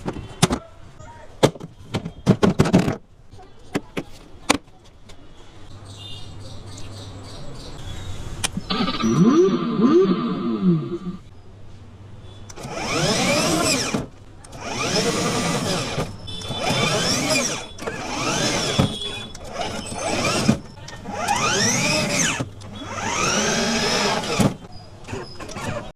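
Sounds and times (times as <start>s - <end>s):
toy car electric motor whining: 8.7s - 11.2s, 12.5s - 25.9s.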